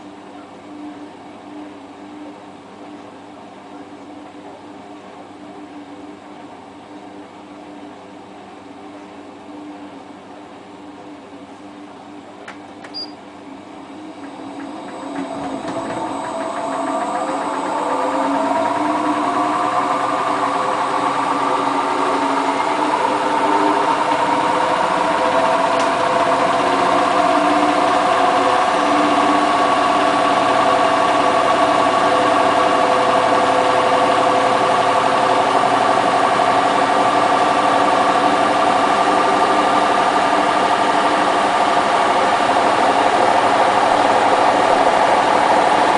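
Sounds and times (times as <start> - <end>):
washing machine spinning: 10.8 - 45.9.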